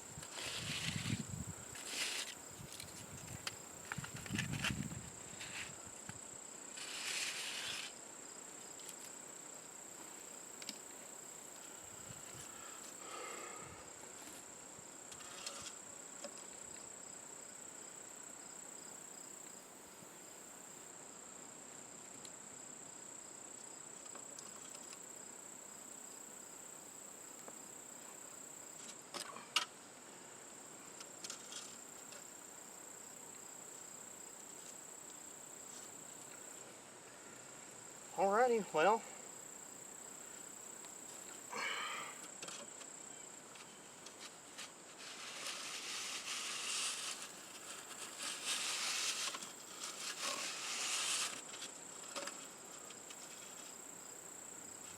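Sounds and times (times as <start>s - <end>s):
insects droning: 0.0s - 54.9s
scrapes and knocks: 1.8s - 5.7s, 15.1s - 15.8s, 43.5s - 53.7s.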